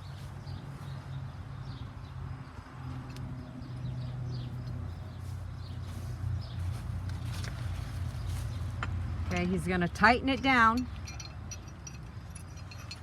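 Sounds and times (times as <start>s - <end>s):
small birds chirping: 0.0s - 8.8s.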